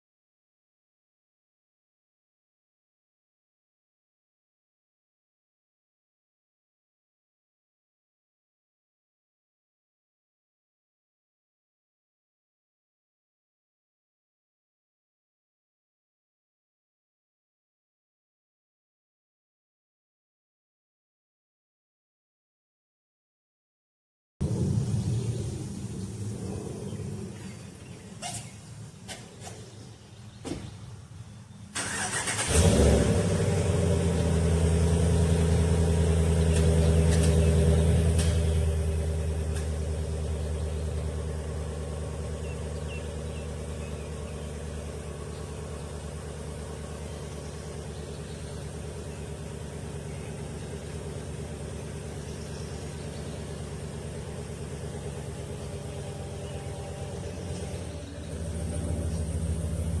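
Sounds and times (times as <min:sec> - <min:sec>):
vehicle engine idling: 0:24.4 - 1:00.0.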